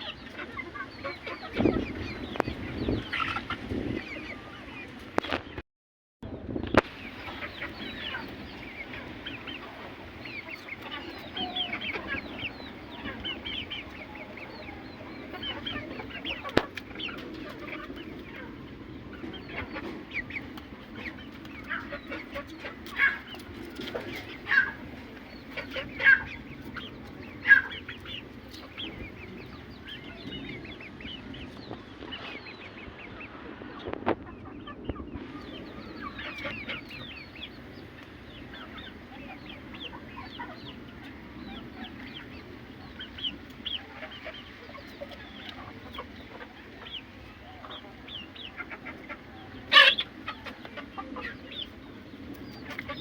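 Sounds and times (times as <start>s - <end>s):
chickens clucking: 0.0s - 5.6s, 6.5s - 53.0s.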